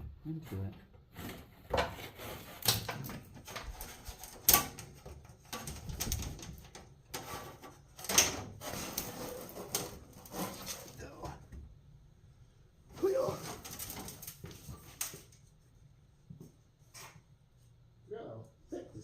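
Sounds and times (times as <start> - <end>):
scraping and rustling: 0.5 - 11.5, 12.9 - 15.8.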